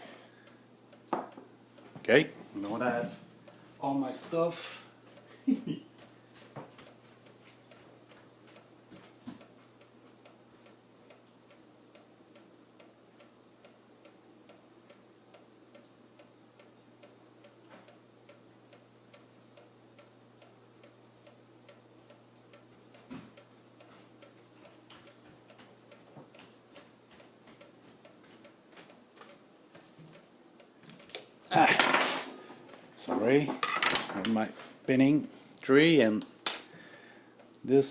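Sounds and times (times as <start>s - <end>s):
faint regular ticking: 0.3s - 31.5s.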